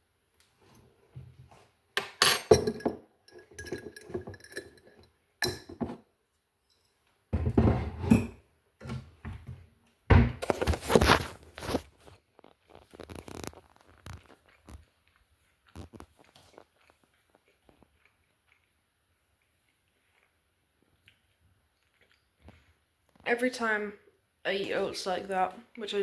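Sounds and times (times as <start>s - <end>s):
spoon clinking against glass jar: 2.0s - 5.8s.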